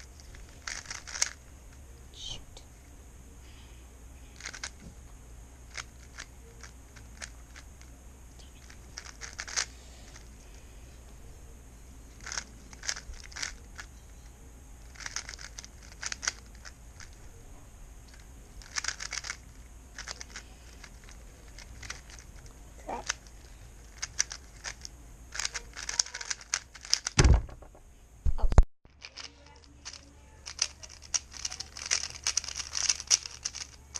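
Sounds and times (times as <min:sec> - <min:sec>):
speed cube clacking: 0:00.0 - 0:01.4, 0:04.4 - 0:04.8, 0:05.7 - 0:07.9, 0:08.6 - 0:10.3, 0:12.2 - 0:13.9, 0:14.9 - 0:17.2, 0:18.6 - 0:27.2, 0:29.0 - 0:33.9.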